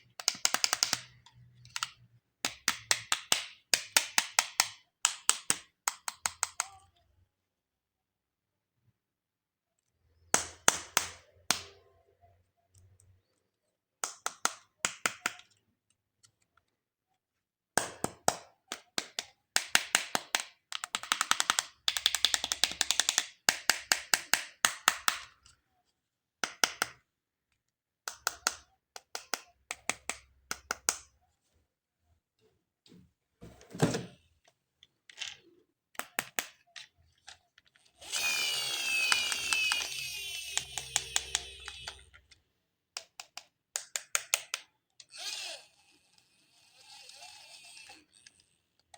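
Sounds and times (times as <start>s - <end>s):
plastic toy parts clicking: 0.1s - 7.0s, 17.8s - 25.6s, 28.0s - 31.1s, 34.8s - 42.4s, 43.0s - 48.9s.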